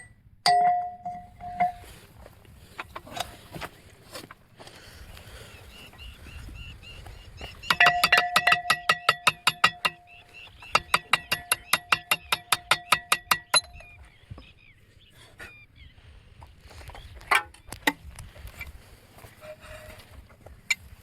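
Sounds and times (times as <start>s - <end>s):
rapid metal-on-metal tapping: 7.6s - 13.9s.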